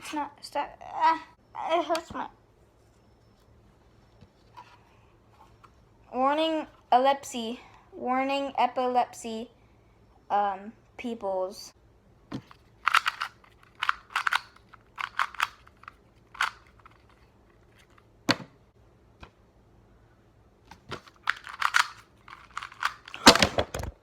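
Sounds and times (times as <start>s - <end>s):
plastic cube clicking: 12.5s - 17.0s, 20.8s - 24.0s.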